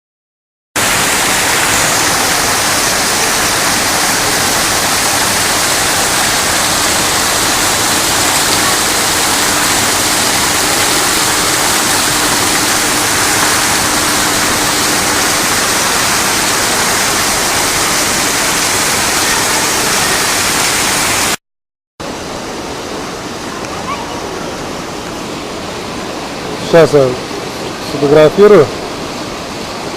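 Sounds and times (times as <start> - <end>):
fountain water pouring into basin: 0.8 - 21.4.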